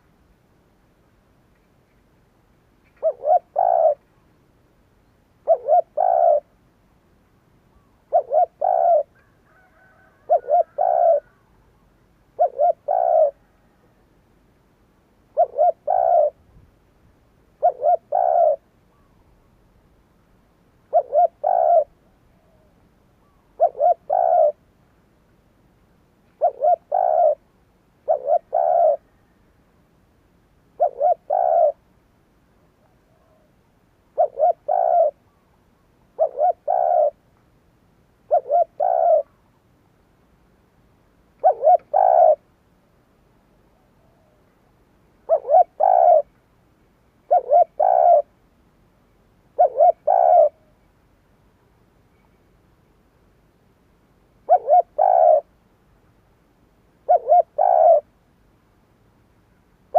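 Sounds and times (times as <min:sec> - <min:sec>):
dove cooing: 0:02.8 - 0:04.1, 0:05.4 - 0:06.6, 0:07.7 - 0:14.0, 0:15.3 - 0:16.5, 0:17.6 - 0:19.2, 0:20.8 - 0:24.6, 0:26.4 - 0:29.4, 0:30.7 - 0:31.8, 0:32.8 - 0:35.3, 0:36.1 - 0:37.2, 0:38.3 - 0:39.4, 0:41.4 - 0:42.5, 0:45.2 - 0:46.3, 0:47.2 - 0:48.3, 0:49.5 - 0:50.7, 0:54.4 - 0:55.5, 0:57.0 - 0:58.1.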